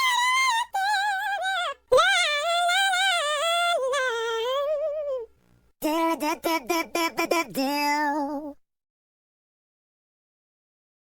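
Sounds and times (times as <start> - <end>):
high-pitched sung voice: 0.0 - 8.6.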